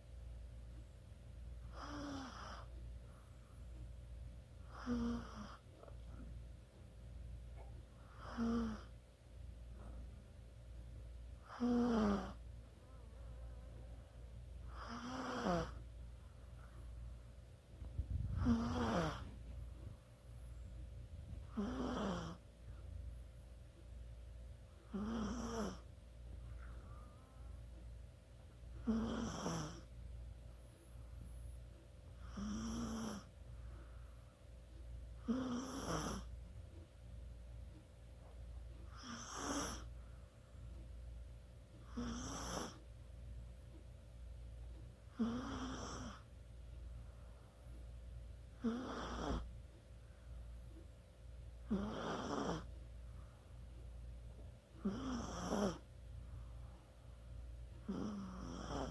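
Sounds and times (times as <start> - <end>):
small dog snoring: 1.6 - 2.8, 4.6 - 6.3, 7.6 - 9.0, 11.4 - 12.5, 14.6 - 15.9, 18.0 - 20.0, 21.3 - 22.4, 24.8 - 25.9, 28.8 - 29.9, 32.2 - 33.4, 35.2 - 36.4, 38.8 - 40.0, 41.8 - 42.9, 45.1 - 46.3, 48.5 - 49.6, 51.6 - 52.8, 54.7 - 55.9, 57.8 - 58.9.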